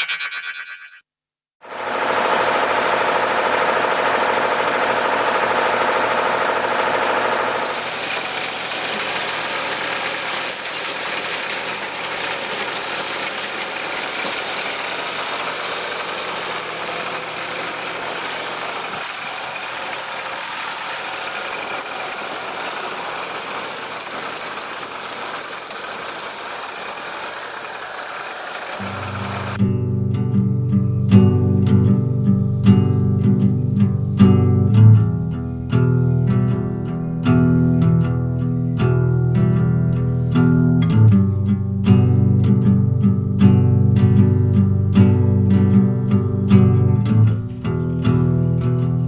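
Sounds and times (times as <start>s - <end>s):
tractor engine running: 1.6s - 29.7s.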